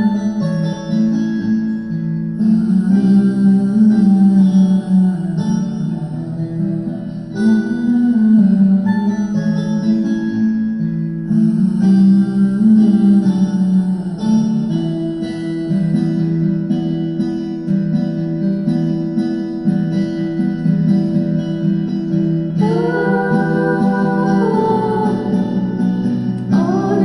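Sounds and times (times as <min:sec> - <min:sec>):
acoustic guitar strumming chords: 0:00.0 - 0:27.0
person singing: 0:02.4 - 0:09.9, 0:11.3 - 0:16.2, 0:22.6 - 0:27.0.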